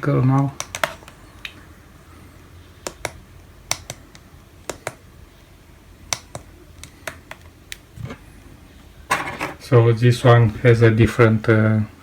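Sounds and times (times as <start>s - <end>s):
controller buttons clicking: 2.9s - 5.0s.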